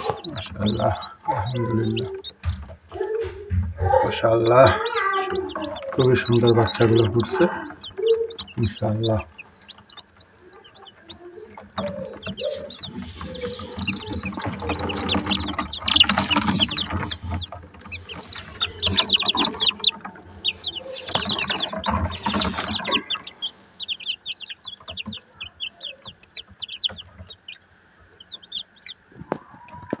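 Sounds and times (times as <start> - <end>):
chicks peeping: 0.0 - 30.0.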